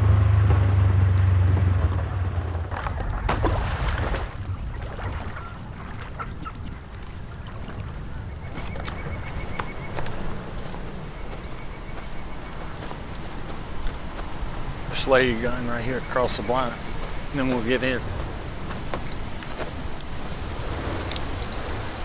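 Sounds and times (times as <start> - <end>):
rustling: 8.5 - 22.0.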